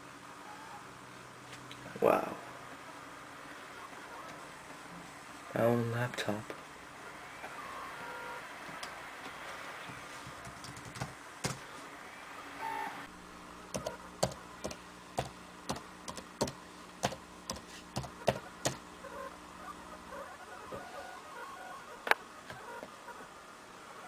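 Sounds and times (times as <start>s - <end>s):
low steady hum: 0.0s - 24.0s
laptop keys clicking: 10.4s - 11.6s, 13.8s - 18.8s.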